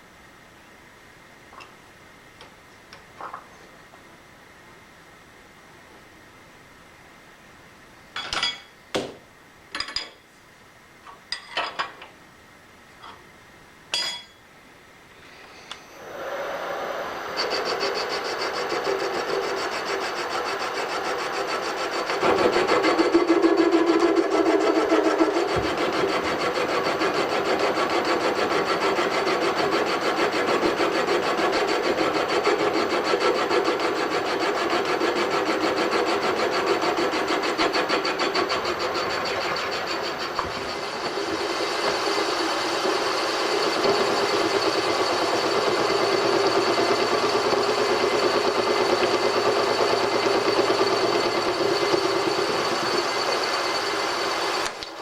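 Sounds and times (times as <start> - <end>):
machine tool cutting metal: 17.2 - 54.9.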